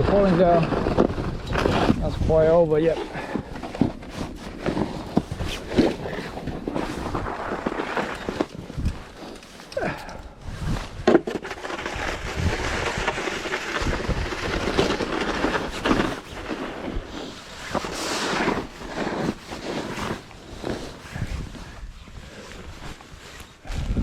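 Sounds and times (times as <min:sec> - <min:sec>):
snow shovel scraping snow: 0:00.0 - 0:23.9.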